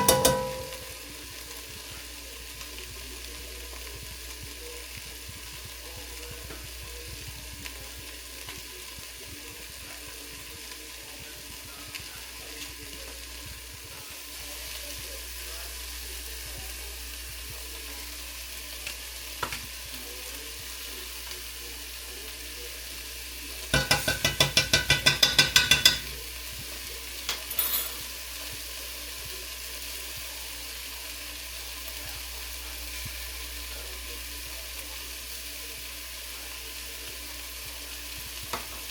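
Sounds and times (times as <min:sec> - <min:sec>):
food sizzling in a pot: 0:00.0 - 0:38.9.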